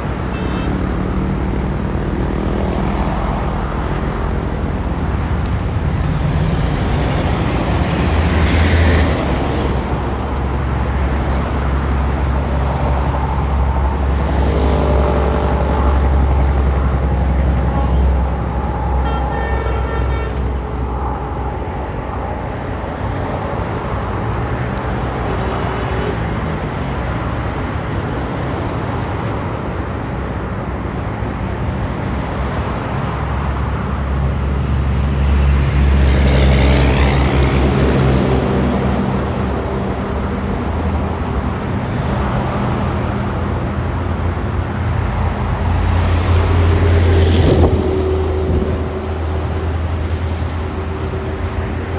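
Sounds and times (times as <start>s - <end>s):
vehicles passing: 0.0s - 51.9s.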